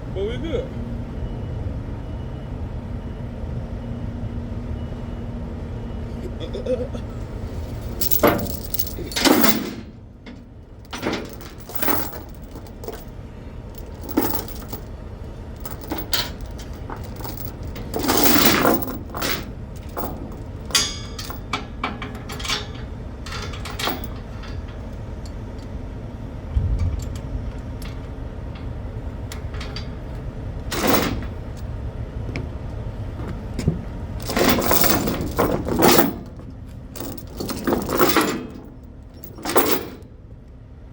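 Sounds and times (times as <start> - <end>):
chains clanking against metal: 7.6 - 25.4, 29.4 - 30.1, 30.7 - 31.7, 34.2 - 36.4, 37.0 - 40.1.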